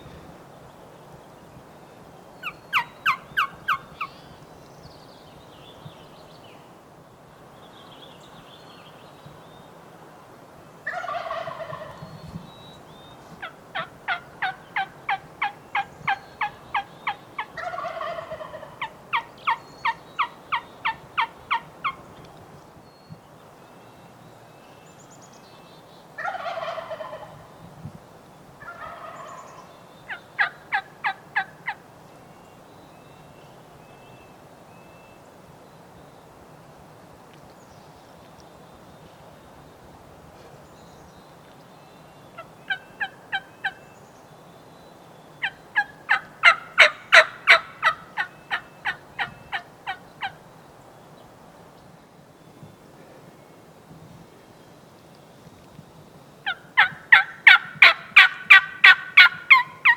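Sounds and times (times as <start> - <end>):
turkey gobbling: 2.4 - 3.9, 10.9 - 12.0, 13.4 - 22.0, 26.2 - 27.3, 28.6 - 29.4, 30.1 - 31.8, 42.4 - 43.8, 45.4 - 50.4, 56.4 - 59.9
turkey yelps: 2.4 - 3.9, 13.4 - 22.0, 28.6 - 29.3, 30.1 - 31.8, 42.4 - 43.8, 45.4 - 50.4, 56.4 - 59.9.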